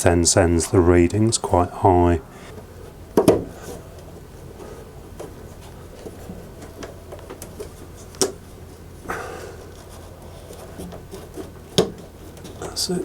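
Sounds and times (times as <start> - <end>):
low steady hum: 0.0 - 13.0
pipe knocking: 3.2 - 3.6.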